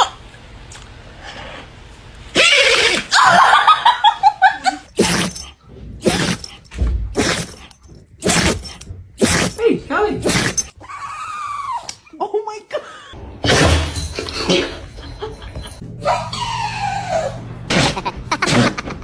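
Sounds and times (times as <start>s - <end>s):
dog sneezing: 10.2s - 10.6s.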